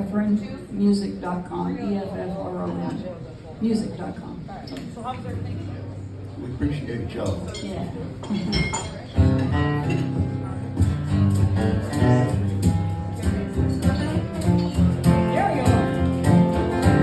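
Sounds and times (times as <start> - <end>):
acoustic guitar strumming and picking: 9.1 - 17.0.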